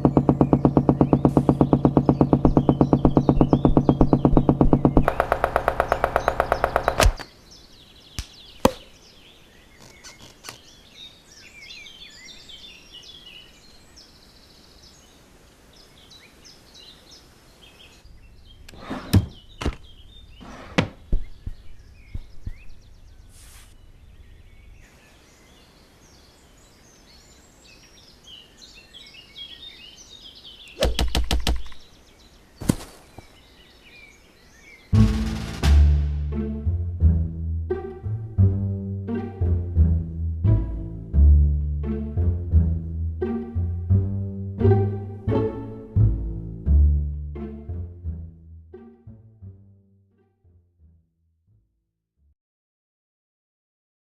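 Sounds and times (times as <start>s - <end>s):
woodpecker hammering: 0.0s - 7.3s, 21.0s - 23.3s, 30.8s - 31.8s
birds chirping: 0.0s - 35.4s.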